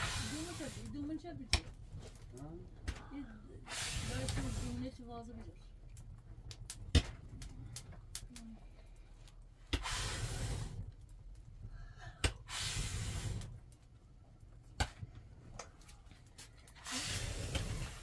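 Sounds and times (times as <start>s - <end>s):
hissing bursts: 0.0s - 1.1s, 3.6s - 5.0s, 9.7s - 10.9s, 12.3s - 13.7s, 16.7s - 18.0s.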